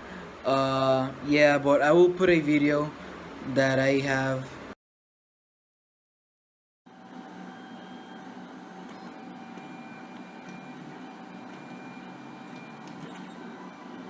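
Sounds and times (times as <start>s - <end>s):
printer mechanical hum: 0.0s - 4.7s, 6.9s - 14.0s
thin high whine tones: 6.9s - 14.0s.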